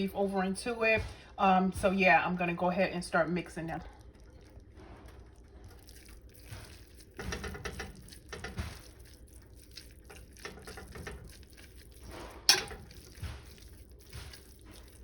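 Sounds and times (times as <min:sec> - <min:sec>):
spoon squelching and scraping food: 0:03.0 - 0:15.0
utensil clanking against pot: 0:06.4 - 0:09.3, 0:10.0 - 0:15.0.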